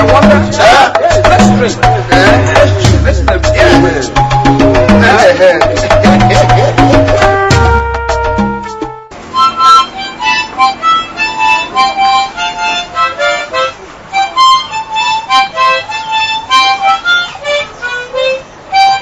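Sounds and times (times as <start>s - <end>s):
film music with quick melody: 0.0s - 13.2s.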